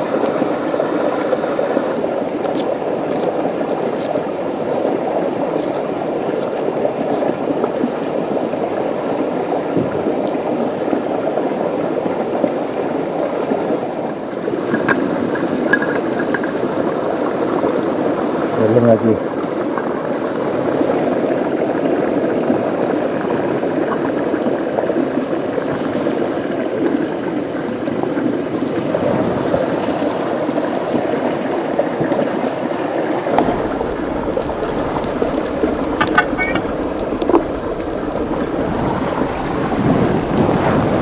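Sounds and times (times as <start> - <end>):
high insect drone: 12.4 - 41.0
deep rumble: 33.4 - 41.0
sharp ticks: 33.4 - 41.0.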